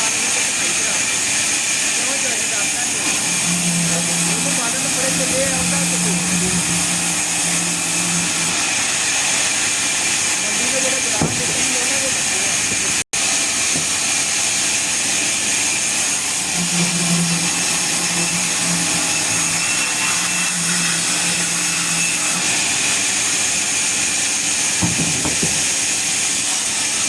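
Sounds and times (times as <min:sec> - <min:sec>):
sawmill machinery hissing: 0:00.0 - 0:27.0
light knocks: 0:24.8 - 0:25.7.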